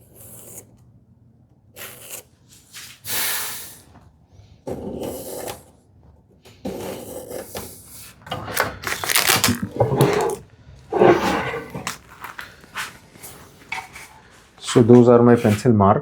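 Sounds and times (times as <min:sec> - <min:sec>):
wooden drawer scraping in opening: 0:06.7 - 0:14.2.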